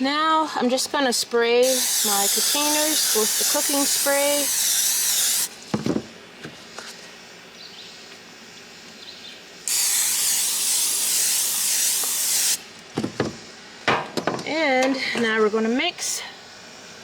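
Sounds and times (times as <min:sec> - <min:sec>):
aerosol can spraying: 0:01.6 - 0:05.6, 0:09.7 - 0:12.6.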